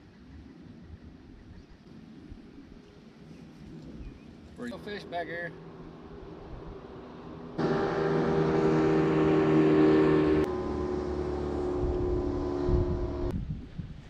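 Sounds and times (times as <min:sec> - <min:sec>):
boat motor running: 0:05.6 - 0:13.3.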